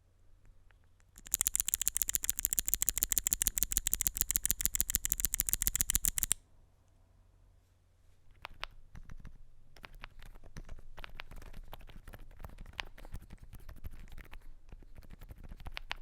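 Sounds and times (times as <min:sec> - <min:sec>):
fast typing on mechanical keyboard: 0:01.2 - 0:06.4.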